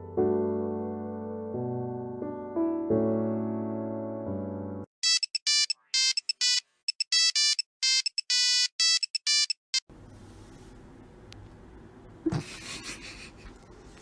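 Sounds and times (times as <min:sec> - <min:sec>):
piano tune: 0:00.0 - 0:04.9
buzzy electronic ringtone beeps: 0:05.0 - 0:09.8.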